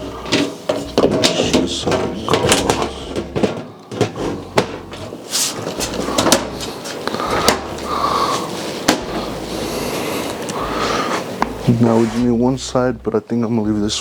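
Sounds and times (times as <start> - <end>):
computer case panels clicking and rattling: 0.2 - 7.8.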